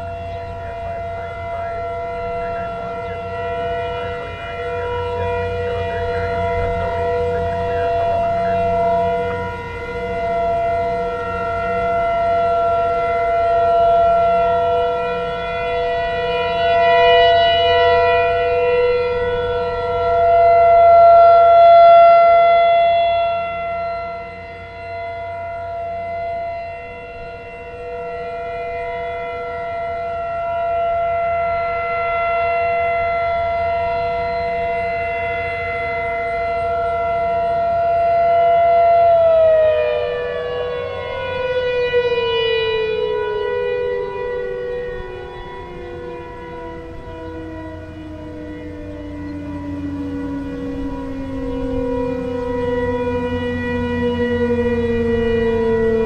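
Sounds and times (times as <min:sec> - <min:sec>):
outdoor warning sirens: 0:00.0 - 0:56.0.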